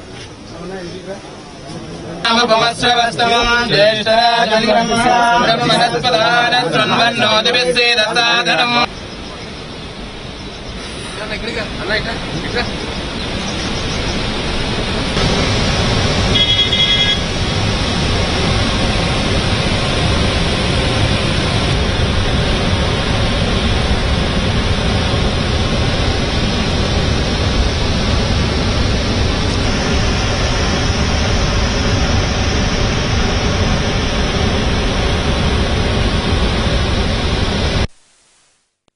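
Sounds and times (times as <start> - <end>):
water rushing through dam spillway: 9.8 - 37.9
short high-pitched tone: 16.3 - 17.3.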